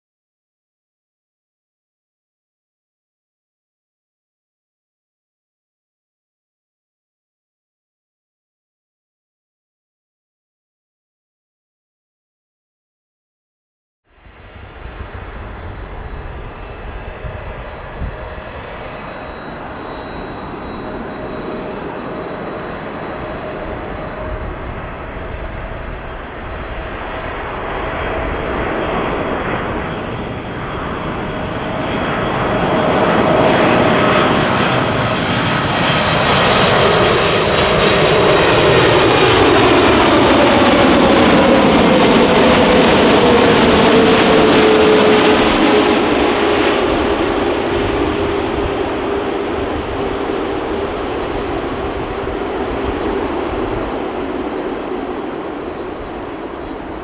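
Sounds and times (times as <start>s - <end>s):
thin high whine: 14.2s - 28.4s
jet engines roaring: 14.2s - 57.0s.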